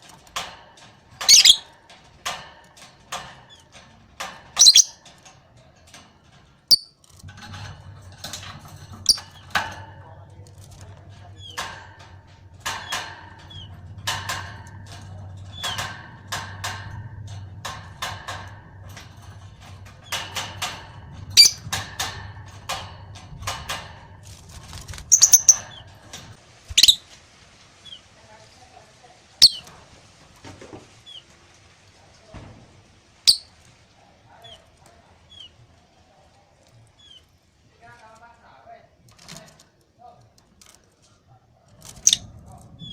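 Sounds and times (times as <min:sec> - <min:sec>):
lovebird chirping: 0:01.3 - 0:01.6, 0:04.6 - 0:05.0, 0:06.7 - 0:06.9, 0:21.4 - 0:21.6, 0:25.1 - 0:25.6, 0:26.8 - 0:27.0, 0:29.4 - 0:29.6, 0:33.3 - 0:33.5.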